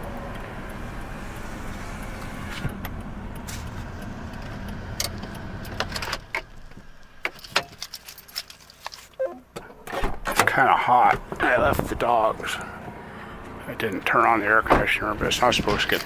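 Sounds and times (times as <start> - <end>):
car engine running: 0.0 - 7.6, 10.4 - 16.0.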